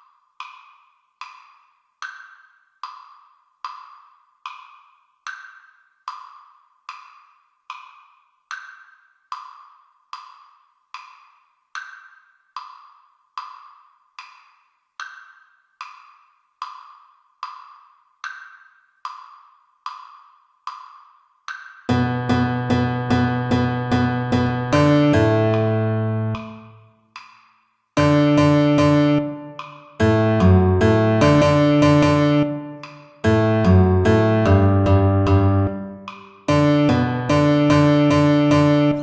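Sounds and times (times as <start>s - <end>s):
metronome clicking: 21.9s - 26.8s, 28.0s - 39.0s.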